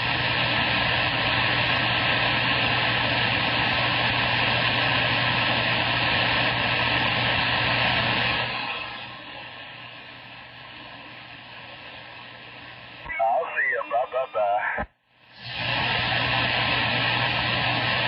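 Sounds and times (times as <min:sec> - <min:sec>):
radio static hiss: 0:13.0 - 0:14.9.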